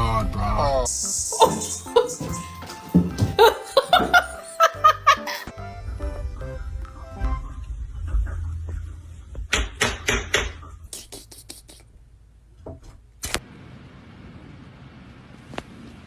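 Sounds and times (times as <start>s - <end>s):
low rumble: 5.6s - 9.5s.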